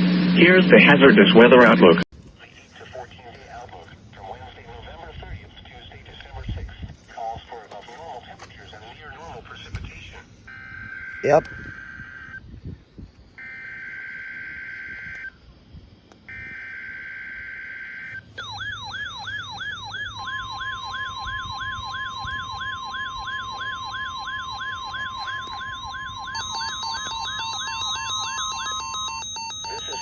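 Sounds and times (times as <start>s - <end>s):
steady warning alarm tone: 7.6s - 12.4s, 13.4s - 15.5s, 16.3s - 30.0s
siren-like sweeping alarm: 10.4s - 12.5s, 13.4s - 15.5s, 16.3s - 30.0s
fast beeping alarm: 10.5s - 12.4s, 16.3s - 30.0s.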